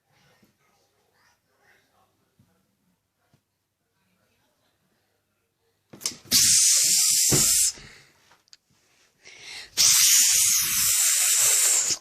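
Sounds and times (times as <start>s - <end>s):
loud hisses: 6.3s - 7.8s, 9.7s - 12.0s.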